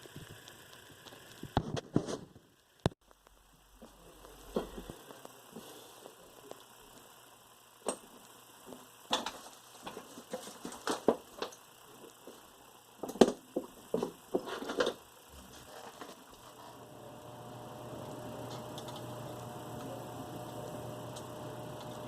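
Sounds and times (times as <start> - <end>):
small parts and tools clicking: 2.8 - 16.6, 18.5 - 19.2.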